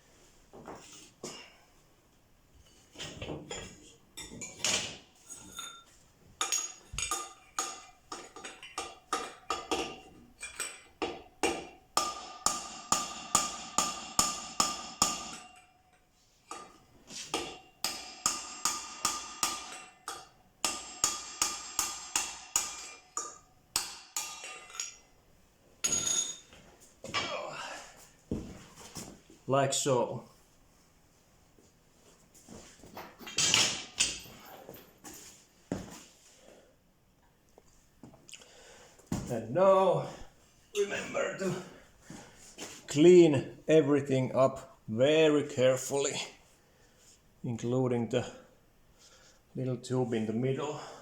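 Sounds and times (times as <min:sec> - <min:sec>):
hammer striking metal pipe: 0:06.4 - 0:15.8, 0:16.5 - 0:25.0.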